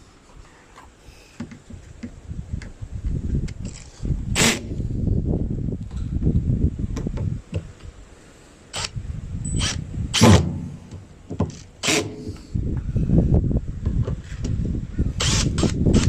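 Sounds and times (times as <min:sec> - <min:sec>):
low rumbling handling noise: 0:08.9 - 0:16.0.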